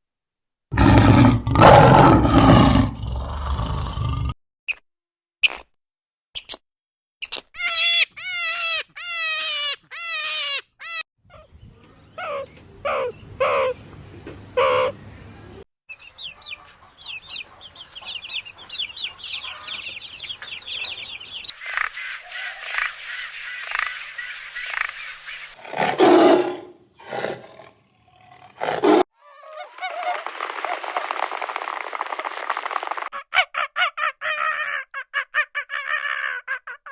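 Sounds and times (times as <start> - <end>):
harsh animal calls: 0.7 - 4.4, 12.2 - 13.8, 14.6 - 15.0, 16.0 - 36.9
wavering repeated animal calls: 12.2 - 13.8, 14.6 - 15.0
lower rising calls: 15.9 - 25.6.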